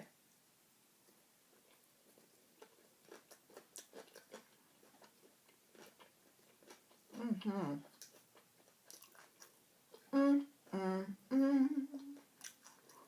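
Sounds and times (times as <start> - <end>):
chewing salad crunchy clicks: 1.6 - 7.2, 7.9 - 10.1, 12.2 - 13.0.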